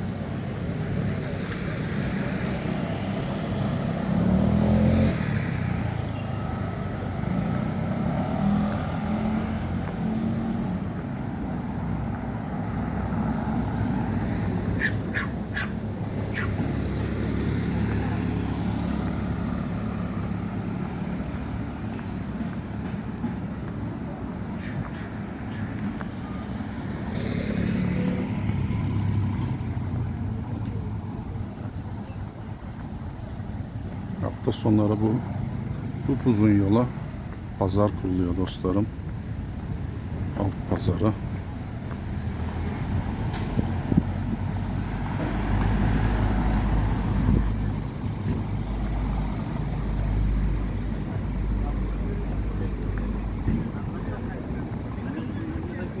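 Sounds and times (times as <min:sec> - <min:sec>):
road noise: 0:00.0 - 0:56.0
street traffic noise: 0:00.0 - 0:56.0
vehicle engine passing by: 0:01.7 - 0:10.9, 0:11.9 - 0:23.2, 0:26.6 - 0:31.3.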